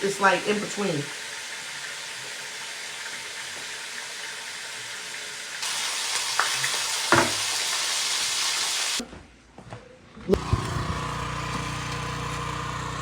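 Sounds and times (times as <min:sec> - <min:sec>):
bacon sizzling in a frying pan: 0:00.0 - 0:09.0.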